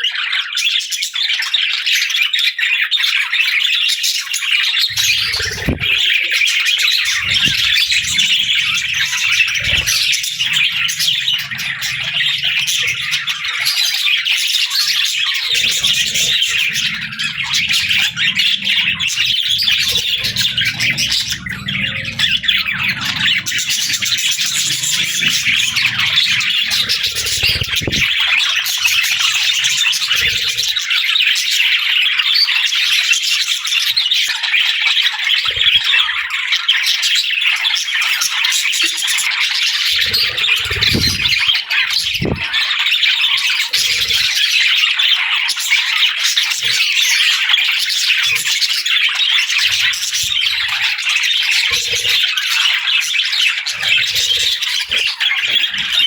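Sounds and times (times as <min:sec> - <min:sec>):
budgerigars chirping and chattering: 0:00.0 - 0:56.0
low rumble: 0:04.9 - 0:06.1, 0:07.0 - 0:13.8, 0:15.4 - 0:30.8.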